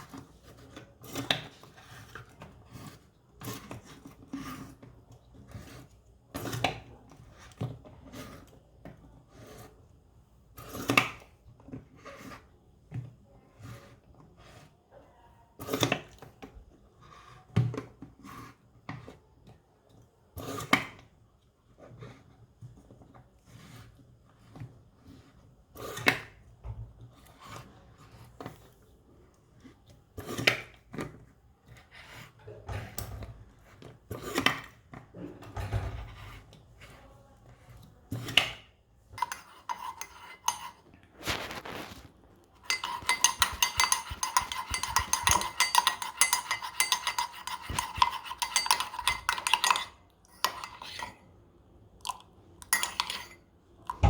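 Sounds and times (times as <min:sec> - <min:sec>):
kitchenware knocking and clinking: 0:39.2 - 0:40.8, 0:42.6 - 0:51.2, 0:52.6 - 0:54.0.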